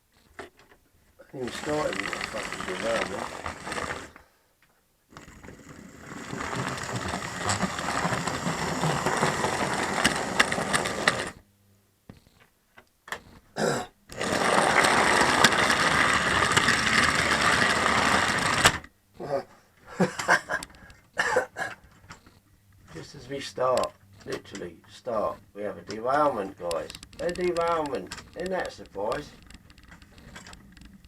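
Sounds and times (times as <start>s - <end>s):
model train motor whirring: 1.3s - 4.3s, 5.1s - 11.4s, 14.1s - 18.9s, 23.0s - 31.0s.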